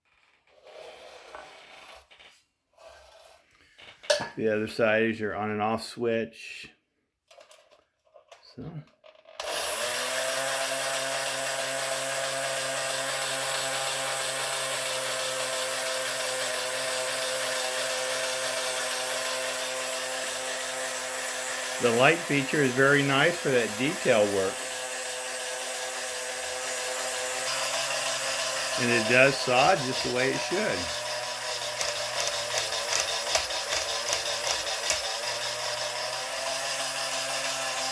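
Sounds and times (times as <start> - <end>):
toy jigsaw motor humming: 9.1 - 37.9.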